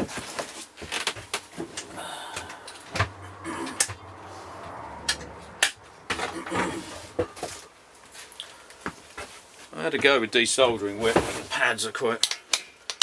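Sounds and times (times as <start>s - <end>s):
low hum: 2.0s - 8.0s.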